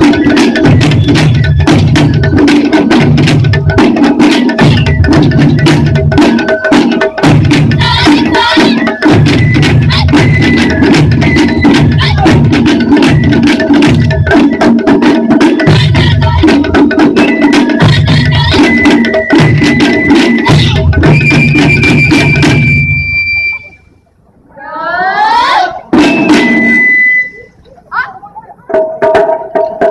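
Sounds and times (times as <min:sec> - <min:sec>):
drum ensemble fast rhythm: 0:00.0 - 0:24.0, 0:25.7 - 0:29.9.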